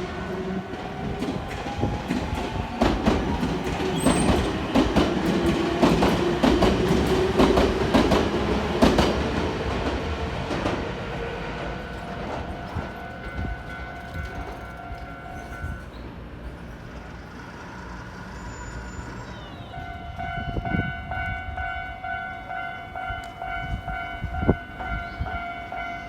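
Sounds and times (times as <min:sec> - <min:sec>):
train rumble: 0:00.0 - 0:26.0
level-crossing warning bell: 0:11.3 - 0:16.0, 0:18.8 - 0:26.0.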